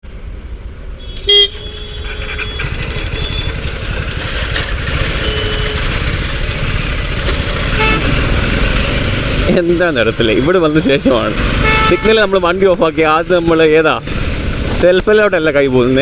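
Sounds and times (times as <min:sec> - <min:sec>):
traffic and road noise: 0:00.0 - 0:16.0
vehicle horn toots: 0:01.0 - 0:03.6, 0:05.1 - 0:06.0, 0:07.7 - 0:08.2, 0:11.6 - 0:12.3.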